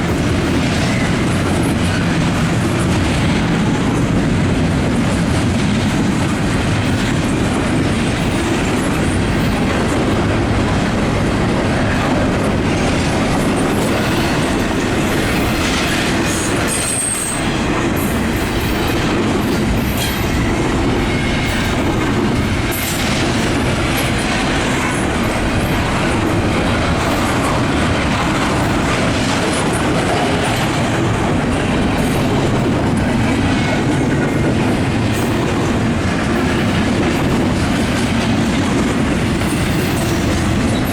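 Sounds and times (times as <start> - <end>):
train wheels rolling on rails: 0.0 - 40.9
high wheel squeal: 15.3 - 18.9.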